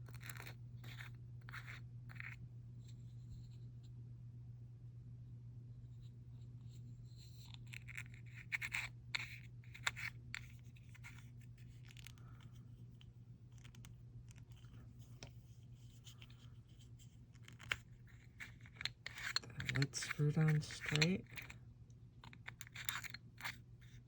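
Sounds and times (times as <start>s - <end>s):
steady low hum: 0.0s - 24.0s
plastic jar lid scraping and clicking: 17.4s - 21.6s.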